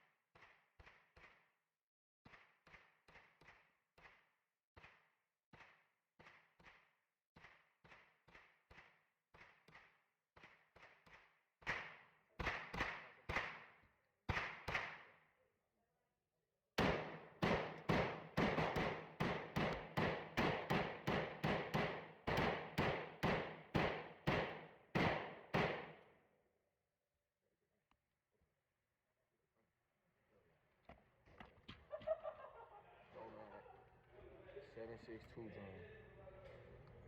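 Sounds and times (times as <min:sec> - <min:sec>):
rifle shots: 0:16.8 - 0:26.0
faint distant gunshots: 0:16.8 - 0:26.1.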